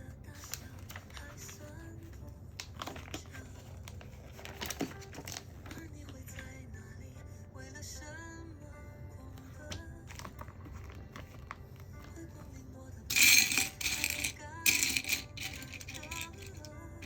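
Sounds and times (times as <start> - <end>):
soft background music: 0.0 - 17.0
jingling rattling clatter: 13.1 - 16.7.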